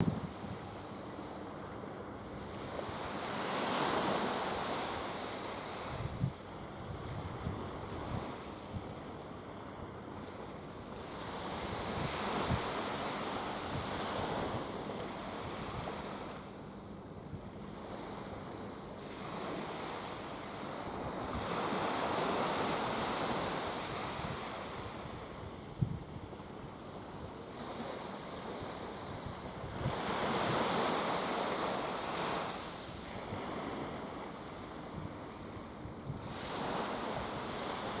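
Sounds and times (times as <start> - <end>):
wind rumbling on microphone: 0.0 - 0.8, 2.4 - 16.4, 20.6 - 38.0
sea waves washing in: 0.0 - 16.7, 17.5 - 38.0.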